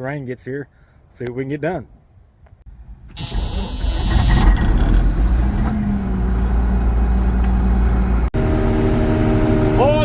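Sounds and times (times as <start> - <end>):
combine engine drone: 3.8 - 10.0.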